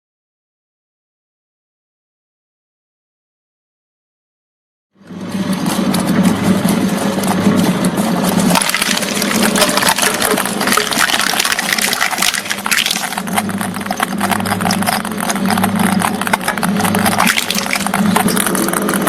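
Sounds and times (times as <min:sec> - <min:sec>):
low machine hum: 0:05.0 - 0:19.0
crushing machine crunching material: 0:05.1 - 0:19.0.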